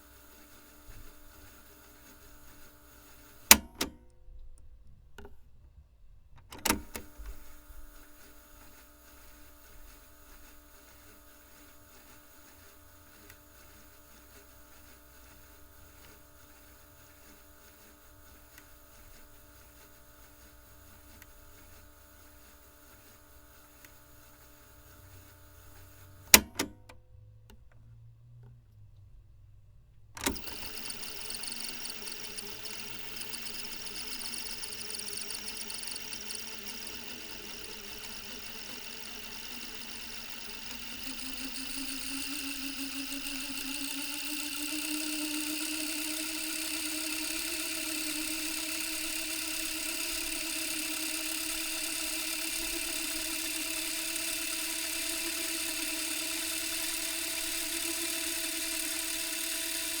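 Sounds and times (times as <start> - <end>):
tape machine click: 3.5 - 4.1, 6.4 - 7.4, 26.3 - 27.0, 30.2 - 60.0
tape rewinding motor whir: 6.6 - 26.7, 30.2 - 60.0.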